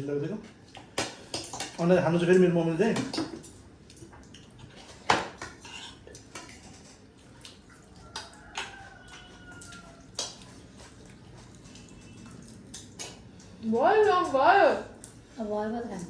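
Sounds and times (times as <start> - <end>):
utensils clinking against plates: 0.7 - 14.2.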